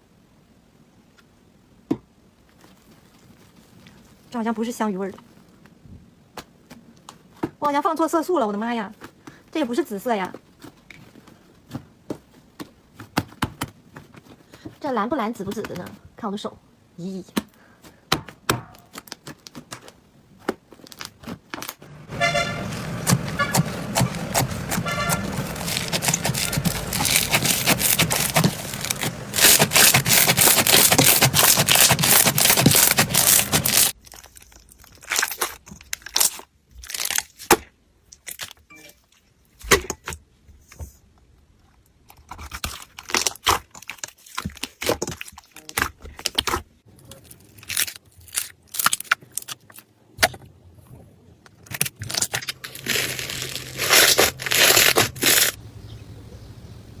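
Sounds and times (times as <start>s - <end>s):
slime squeezed crackling and popping: 23.0s - 37.5s, 42.4s - 50.3s, 51.6s - 55.6s.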